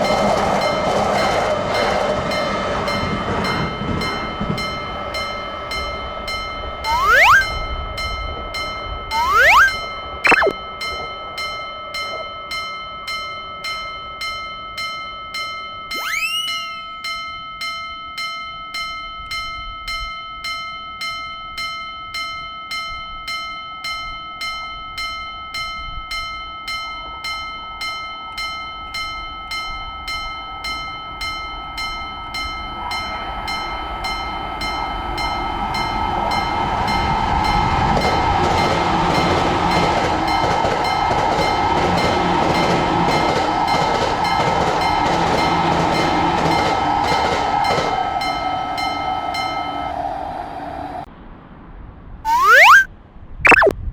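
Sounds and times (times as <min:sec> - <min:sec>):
train passing: 0:00.0 - 0:09.9, 0:31.1 - 0:51.1.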